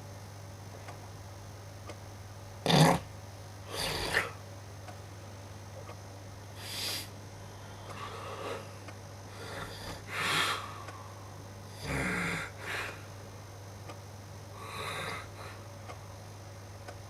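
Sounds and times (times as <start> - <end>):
steady low hum: 0.0 - 17.0
person snoring: 2.7 - 3.1, 3.7 - 4.4, 6.6 - 7.1, 7.9 - 10.9, 11.7 - 13.0, 14.6 - 15.6.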